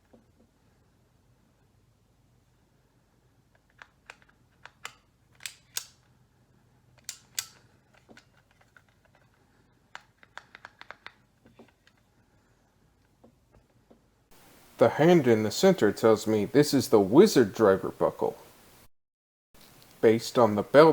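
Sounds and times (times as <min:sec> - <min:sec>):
plastic toy buckle clicking: 0:03.6 - 0:06.1, 0:07.0 - 0:09.2, 0:09.9 - 0:12.0.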